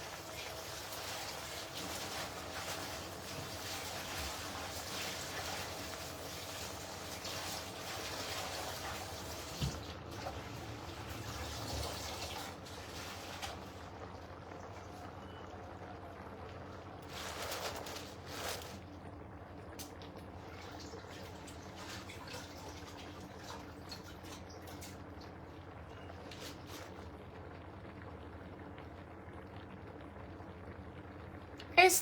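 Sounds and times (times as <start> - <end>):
water running and splashing: 0.0 - 14.0, 20.2 - 27.0.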